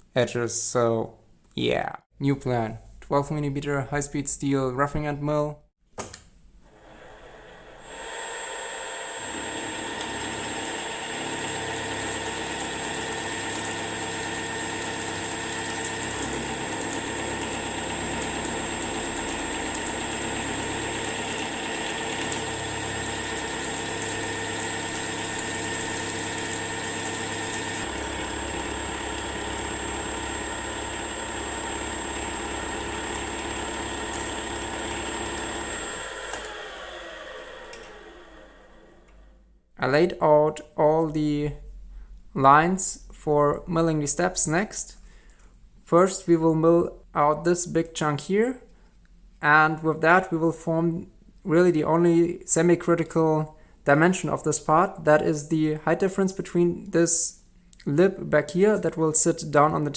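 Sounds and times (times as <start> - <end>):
milling machine running: 6.6 - 39.4.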